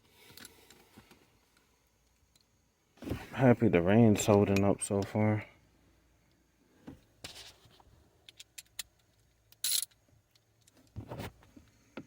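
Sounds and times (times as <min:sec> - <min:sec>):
tools and metal parts clinking: 0:08.3 - 0:11.0.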